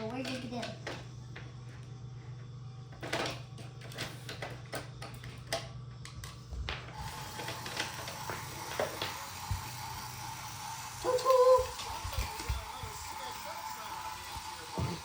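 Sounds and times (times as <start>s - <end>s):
toy train motor hum: 7.0s - 15.0s.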